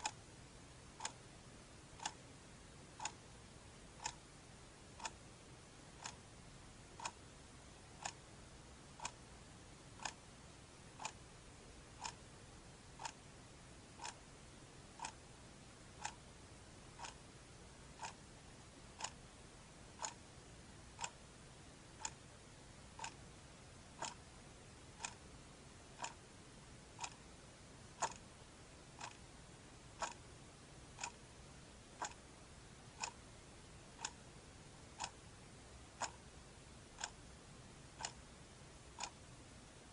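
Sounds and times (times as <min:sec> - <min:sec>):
clock ticking: 0:00.0 - 0:00.2, 0:00.9 - 0:01.2, 0:02.0 - 0:02.2, 0:02.9 - 0:03.2, 0:03.9 - 0:04.2, 0:04.9 - 0:05.2, 0:06.0 - 0:06.2, 0:06.9 - 0:07.2, 0:07.9 - 0:08.2, 0:08.9 - 0:09.2, 0:10.0 - 0:10.3, 0:11.0 - 0:11.2, 0:11.9 - 0:12.2, 0:13.0 - 0:13.2, 0:14.0 - 0:14.3, 0:14.9 - 0:15.3, 0:15.9 - 0:16.2, 0:16.9 - 0:17.2, 0:17.9 - 0:18.2, 0:18.8 - 0:19.3, 0:19.9 - 0:20.3, 0:20.9 - 0:21.2, 0:21.9 - 0:22.2, 0:22.9 - 0:23.3, 0:24.0 - 0:24.3, 0:25.0 - 0:25.3, 0:25.9 - 0:26.2, 0:26.9 - 0:27.3, 0:27.9 - 0:29.3, 0:29.9 - 0:30.3, 0:30.9 - 0:31.3, 0:31.9 - 0:33.2, 0:33.9 - 0:35.2, 0:35.8 - 0:36.3, 0:37.0 - 0:37.2, 0:37.9 - 0:38.3, 0:38.9 - 0:39.3.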